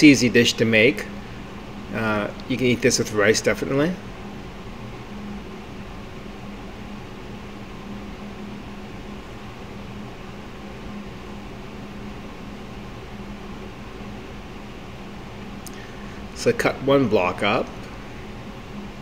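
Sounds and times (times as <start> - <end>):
steady low hum with hiss: 0.0 - 19.0.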